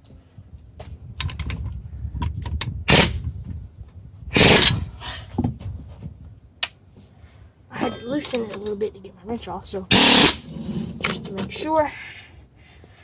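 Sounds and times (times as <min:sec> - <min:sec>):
impact wrench rattling bursts: 0:09.9 - 0:11.2.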